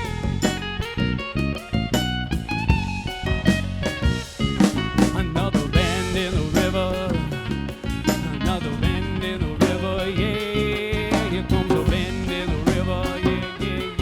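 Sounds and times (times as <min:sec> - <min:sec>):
acoustic guitars: 0:00.0 - 0:14.0
bending lead melody: 0:00.0 - 0:14.0
steady percussion: 0:00.0 - 0:14.0.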